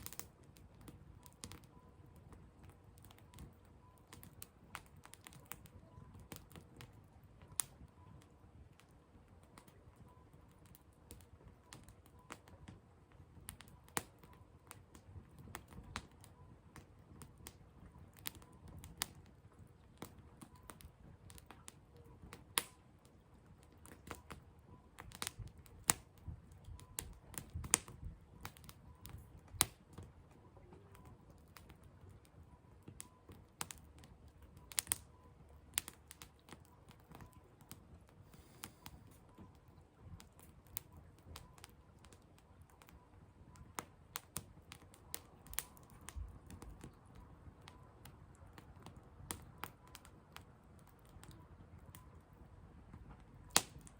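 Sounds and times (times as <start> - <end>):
firewood crackling and popping: 0.0 - 53.9
low rush of fire: 0.0 - 53.9.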